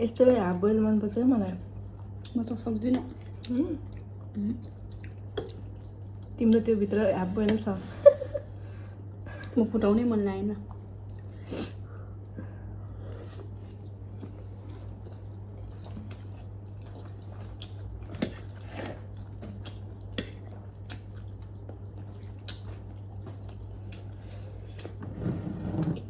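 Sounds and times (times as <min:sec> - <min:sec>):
steady low hum: 0:00.0 - 0:26.0
chewing and biting noodles: 0:13.2 - 0:25.0.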